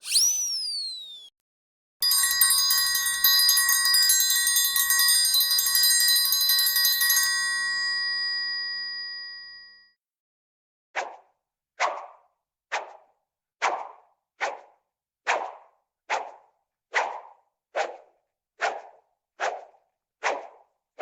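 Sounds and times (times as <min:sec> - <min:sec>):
triangle ringing: 0:02.0 - 0:09.7.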